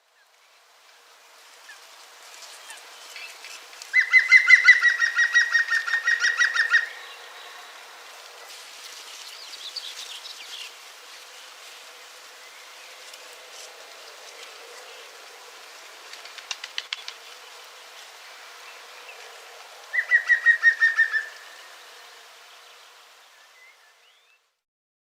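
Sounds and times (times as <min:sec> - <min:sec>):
steady background hiss: 0:00.0 - 0:24.6
songbird trilling: 0:04.0 - 0:07.2, 0:20.0 - 0:21.4.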